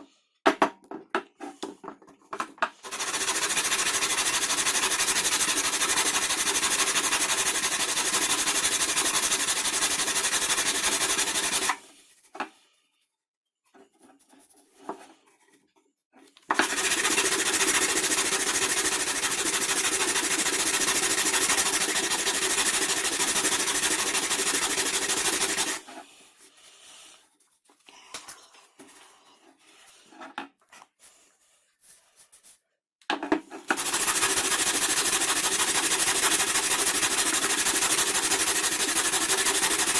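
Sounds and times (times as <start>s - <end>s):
scroll saw running: 2.8s - 11.8s, 16.5s - 25.8s, 33.7s - 39.9s.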